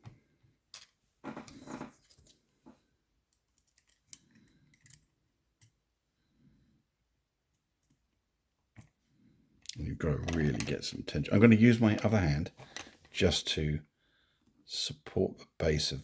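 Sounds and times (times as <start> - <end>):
small metal clicks: 3.3 - 5.8.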